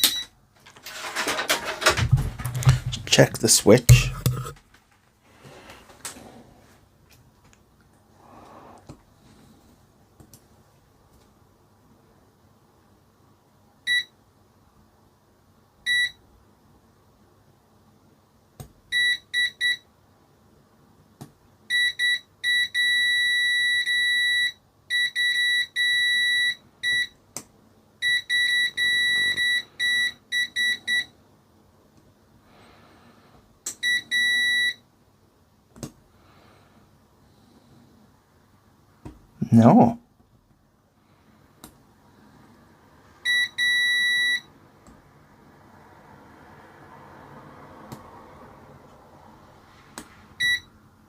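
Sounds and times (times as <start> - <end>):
multimeter beeping: 0.0 - 0.3, 28.0 - 31.1, 33.8 - 34.8, 43.3 - 44.5, 50.4 - 50.7.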